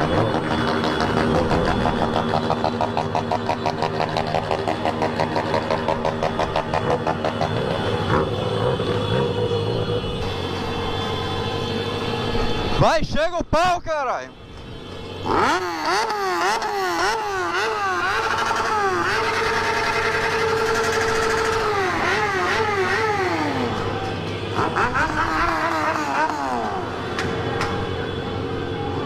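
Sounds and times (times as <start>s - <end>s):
motorcycle engine revving: 0.0s - 10.6s, 15.2s - 27.0s.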